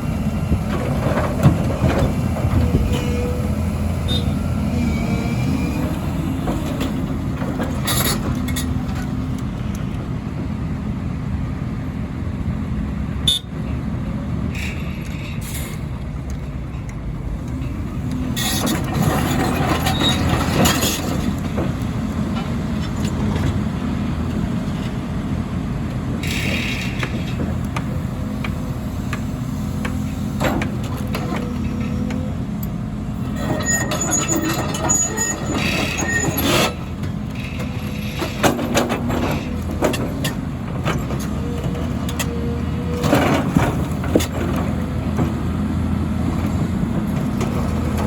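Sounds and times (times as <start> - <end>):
excavator diesel engine: 0.0 - 48.0
steel clanking on asphalt: 5.2 - 10.0, 14.5 - 45.6
high metallic squeals: 33.4 - 36.8.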